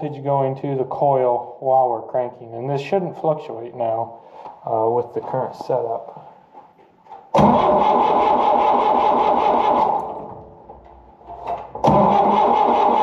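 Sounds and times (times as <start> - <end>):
starter cranking engine: 7.4 - 10.4, 11.7 - 13.0.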